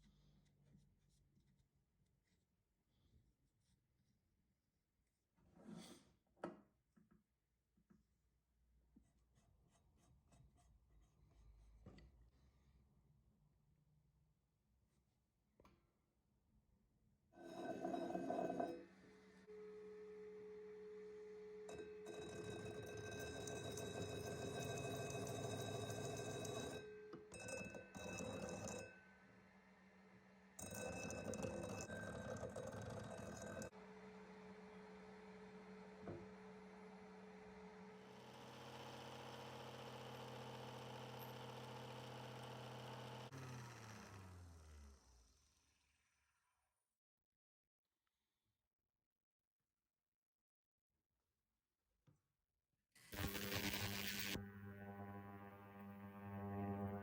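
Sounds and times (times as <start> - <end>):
electric polishing motor humming: 38.5 - 45.3, 53.2 - 57.0
polishing motor humming: 53.2 - 57.0.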